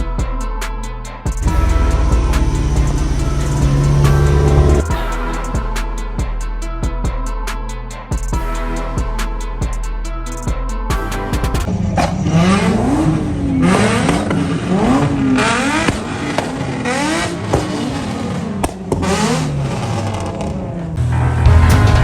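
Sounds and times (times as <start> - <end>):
car engine revving: 1.4 - 5.3, 11.7 - 21.8.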